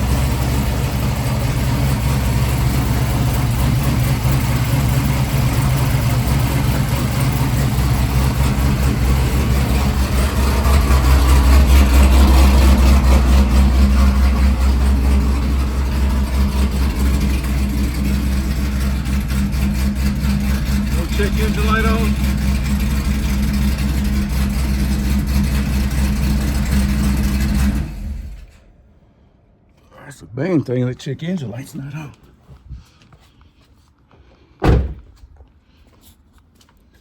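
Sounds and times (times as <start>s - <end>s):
car engine idling: 0.0s - 28.8s.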